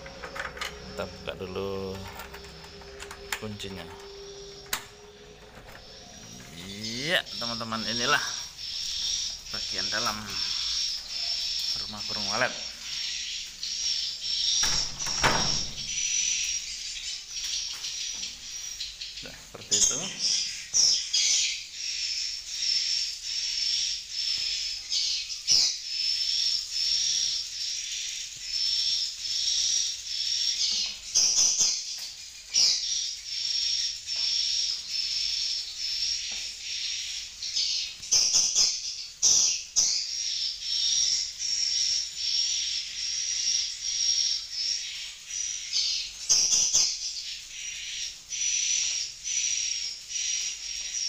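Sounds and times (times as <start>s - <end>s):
swiftlets twittering: 0.0s - 16.6s.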